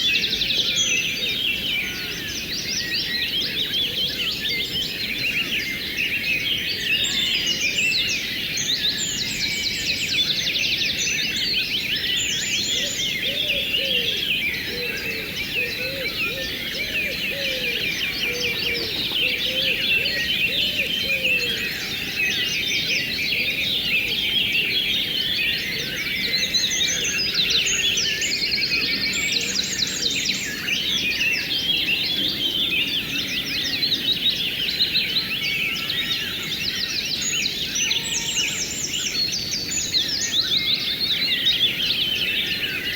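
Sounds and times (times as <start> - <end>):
songbirds chirping: 0.0 - 42.9
low-pitched bird calls: 13.4 - 22.0.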